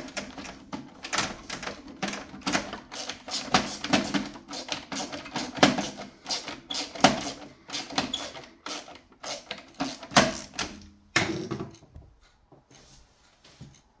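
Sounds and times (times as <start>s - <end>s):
hard parts clicking and knocking: 0.0s - 12.8s.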